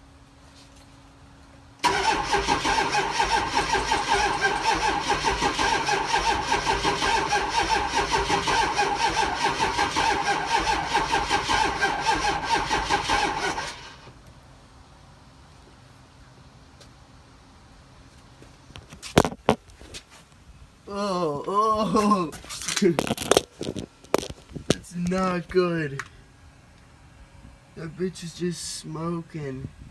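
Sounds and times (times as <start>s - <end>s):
diesel engine cranking: 1.8s - 14.1s, 22.6s - 25.4s.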